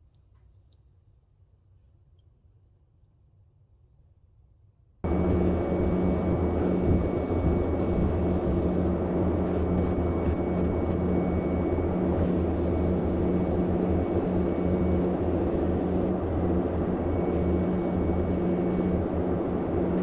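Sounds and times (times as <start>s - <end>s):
low hum: 5.0s - 20.0s.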